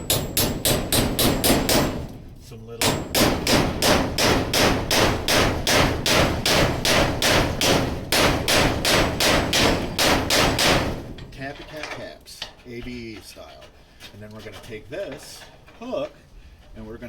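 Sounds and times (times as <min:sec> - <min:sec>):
hammer tapping metal staple: 0:00.0 - 0:02.0.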